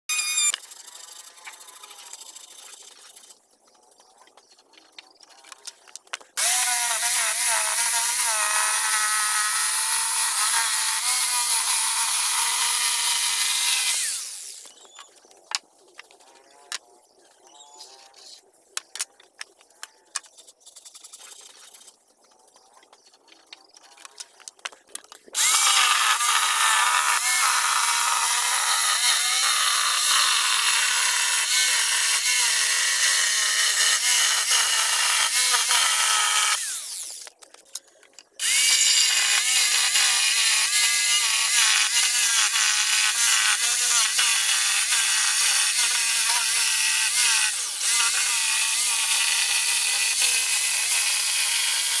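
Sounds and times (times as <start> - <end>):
power tool cutting wood: 0.1 - 2.3, 6.4 - 14.9, 25.4 - 37.3, 38.4 - 52.0.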